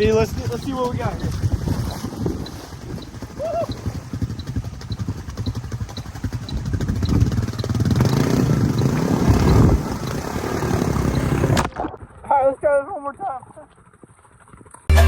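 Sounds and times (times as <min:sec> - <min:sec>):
atv engine revving: 0:00.0 - 0:11.6.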